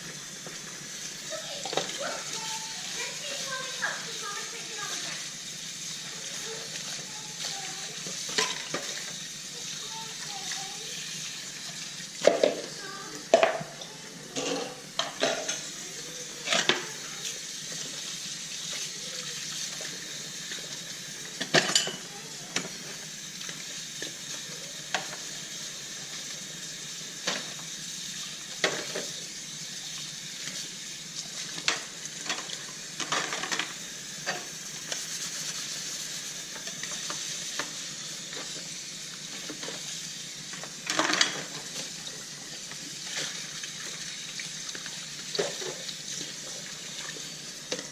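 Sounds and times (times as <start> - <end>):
steady hiss: 0.0 - 14.8
dishes and cutlery clinking: 21.5 - 22.0.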